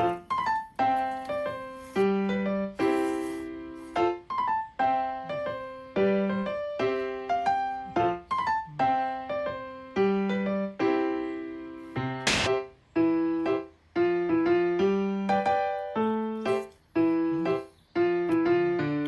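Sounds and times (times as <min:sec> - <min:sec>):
piano melody: 0:00.0 - 0:19.0
sharp noisy hit: 0:12.2 - 0:12.7.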